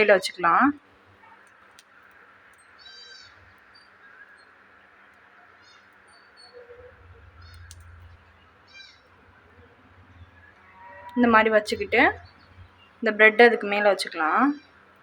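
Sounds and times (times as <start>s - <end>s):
high chirping bird calls: 2.6s - 4.6s, 5.6s - 9.1s.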